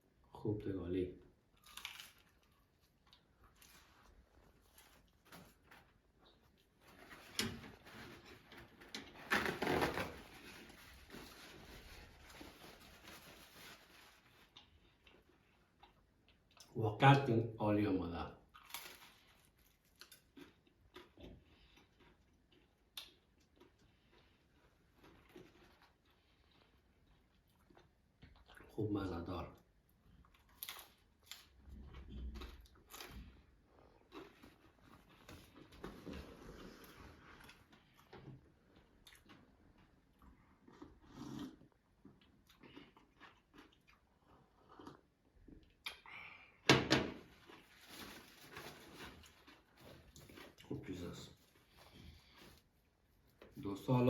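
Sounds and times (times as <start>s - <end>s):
faint crunching and mouth clicks: 1.2s - 6.8s, 11.3s - 16.8s, 18.4s - 28.8s, 29.4s - 46.4s
person chewing flatbread: 1.3s - 6.8s, 13.8s - 16.7s, 18.4s - 28.6s, 29.6s - 46.1s, 47.4s - 50.7s, 51.4s - 53.5s
person eating: 18.5s - 28.7s, 30.0s - 46.1s.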